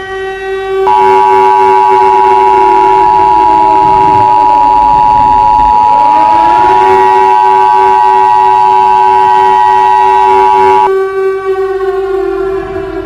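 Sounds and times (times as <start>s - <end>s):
civil defense siren: 0.0s - 13.0s
two-tone attention signal: 0.9s - 10.9s.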